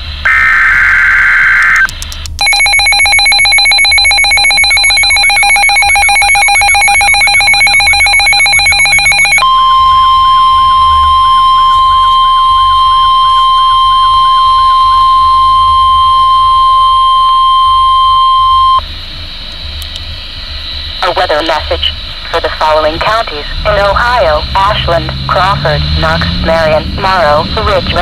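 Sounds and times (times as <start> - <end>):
steady warning tone: 0.0 - 28.0
screeching digital data burst: 0.2 - 9.9
fast-pulsing buzzy alarm tone: 0.2 - 18.8.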